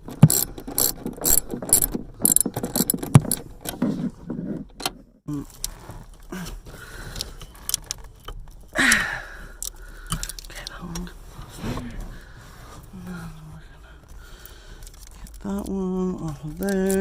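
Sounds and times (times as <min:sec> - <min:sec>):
ratchet wrench clicking: 0:00.1 - 0:03.4.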